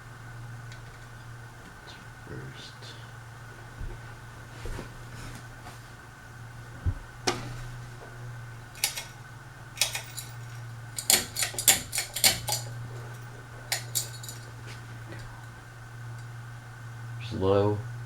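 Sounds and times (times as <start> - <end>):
ceiling fan motor humming: 0.0 - 18.0
fan speed switch clicking: 0.6 - 1.8, 6.8 - 16.3
pull chain rattling: 8.6 - 15.6.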